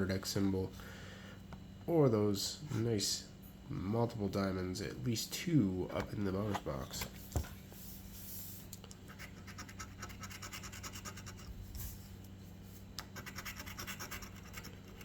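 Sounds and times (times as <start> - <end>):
lottery ticket being scratched: 9.1 - 11.5, 13.0 - 15.0.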